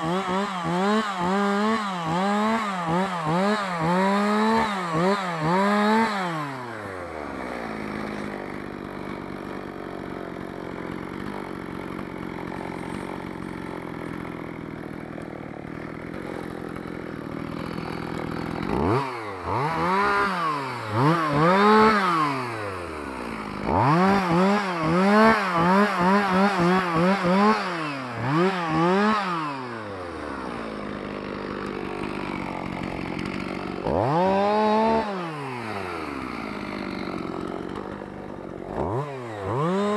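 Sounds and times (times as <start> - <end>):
chainsaw revving and idling: 0.0 - 39.9.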